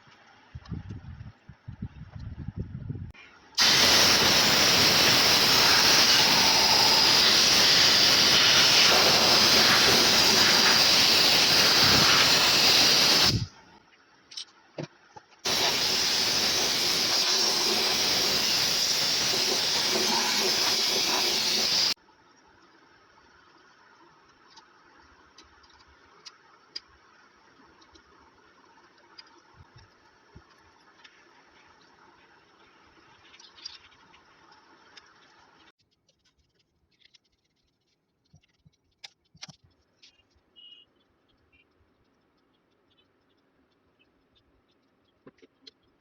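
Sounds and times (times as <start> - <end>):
pressurised air hissing: 3.6 - 13.6, 15.5 - 22.0.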